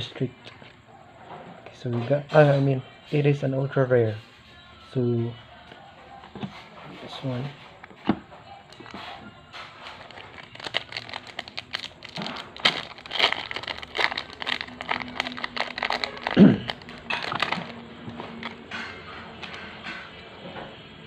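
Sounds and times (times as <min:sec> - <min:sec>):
foil wrappers crinkling: 0:08.7 - 0:09.0, 0:09.6 - 0:19.7.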